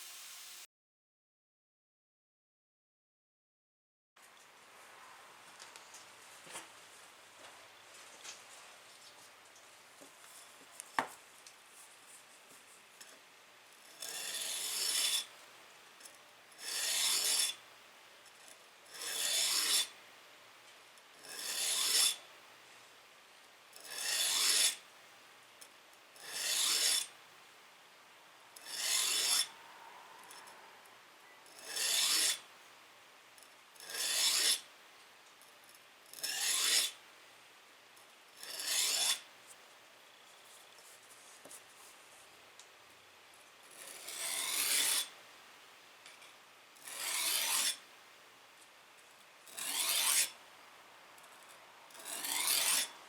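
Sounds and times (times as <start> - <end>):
file strokes on steel: 13.8 - 15.4, 16.5 - 17.6, 18.4 - 20.0, 21.2 - 22.2, 23.8 - 24.8, 26.2 - 27.2, 28.6 - 29.6, 31.5 - 32.5, 33.8 - 34.7, 36.1 - 37.0, 38.4 - 39.3, 43.6 - 45.2, 46.8 - 47.9, 49.4 - 50.4, 51.3 - 53.0.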